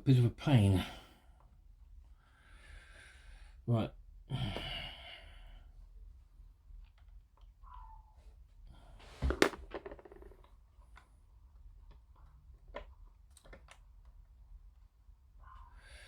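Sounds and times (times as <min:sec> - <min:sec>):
plastic parts clicking and tapping: 0:09.2 - 0:11.1.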